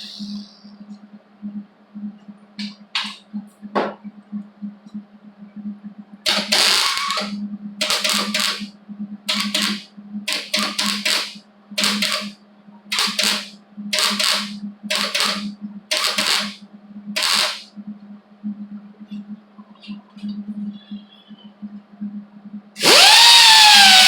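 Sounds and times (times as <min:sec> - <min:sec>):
steady hum: 0:00.0 - 0:24.0
welder crackling bursts: 0:06.3 - 0:08.7, 0:09.3 - 0:16.6, 0:17.2 - 0:17.7, 0:22.8 - 0:24.0.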